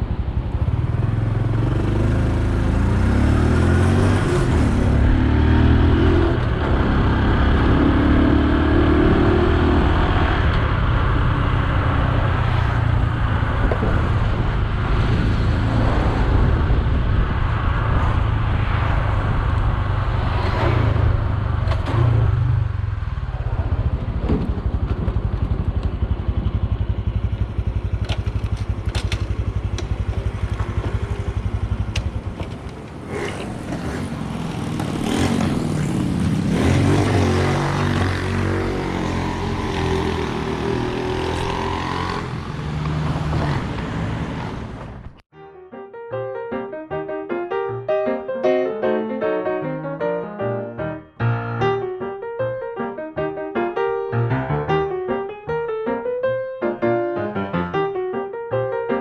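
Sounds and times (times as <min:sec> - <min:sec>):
road and wind noise: 0:00.0 - 0:45.3
motorbike engine running: 0:23.4 - 0:42.6.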